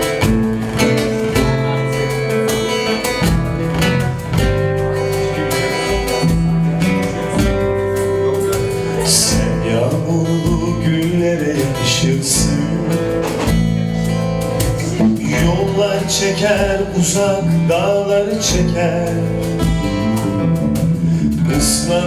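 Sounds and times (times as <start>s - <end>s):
person singing: 0.0s - 22.0s
strummed acoustic guitar: 0.0s - 22.0s.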